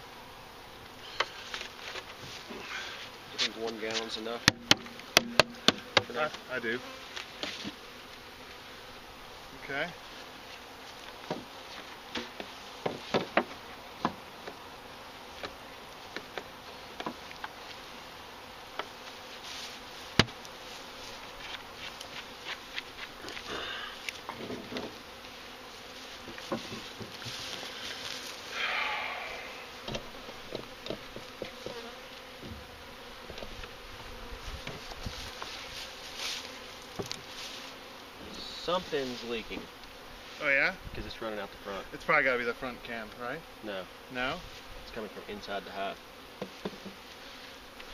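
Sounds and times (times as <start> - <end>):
honeybees buzzing: 0.0 - 47.9
knocks and clicks of hive parts: 4.4 - 6.1.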